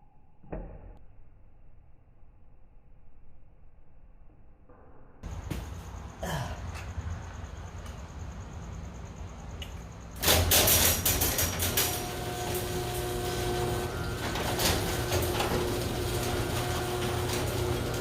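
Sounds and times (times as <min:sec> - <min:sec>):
garage door motor humming and whining: 0:10.1 - 0:18.0
garage door opener clatter: 0:10.2 - 0:18.0.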